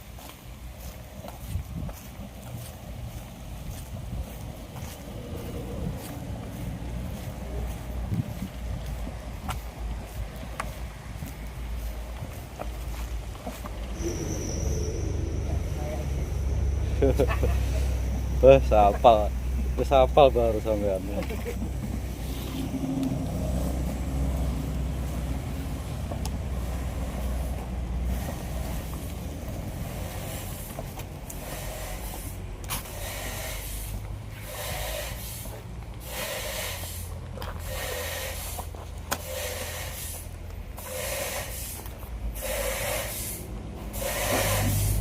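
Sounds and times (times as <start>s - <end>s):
machinery engine hum: 0.0s - 39.6s
hissing rasping bursts: 27.2s - 45.0s.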